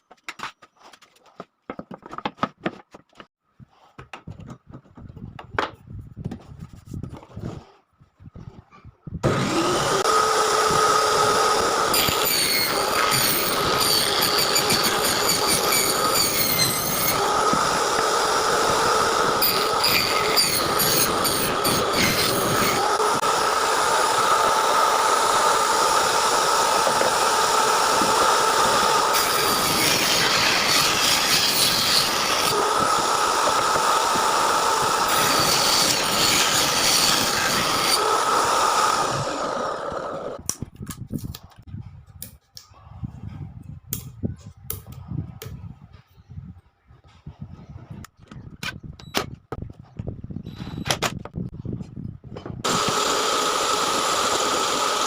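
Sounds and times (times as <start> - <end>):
woodworking power tool whining: 9.2 - 40.4, 52.6 - 55.0.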